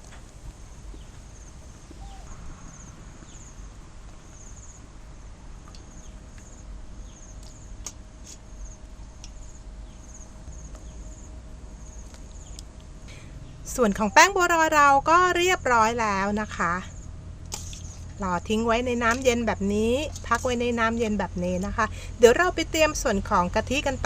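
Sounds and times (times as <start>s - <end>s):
low rumble: 0.0s - 7.0s
insects trilling: 1.0s - 4.9s.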